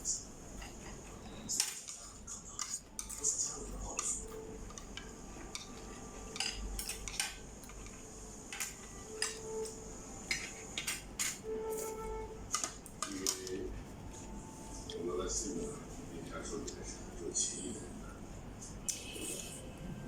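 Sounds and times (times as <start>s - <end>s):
cutlery scraping a plate: 0.6s - 13.6s.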